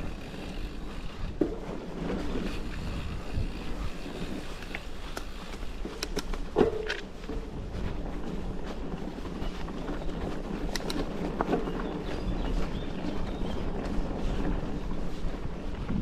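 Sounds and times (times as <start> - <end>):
bike tyres rolling on dirt: 0.0 - 16.0
wind noise on microphone: 0.0 - 16.0
light clicks and rattles: 3.4 - 12.7.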